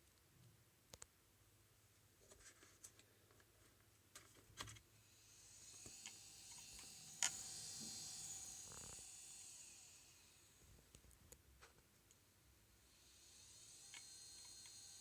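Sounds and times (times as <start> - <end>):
hard drive spinning up whine: 5.0 - 11.0, 12.8 - 15.0
hard drive faint clicks: 5.7 - 9.1, 13.6 - 15.0.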